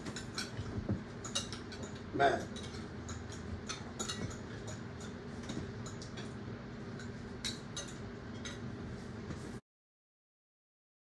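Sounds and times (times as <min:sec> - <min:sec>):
utensils clinking on plates: 0:00.0 - 0:08.7.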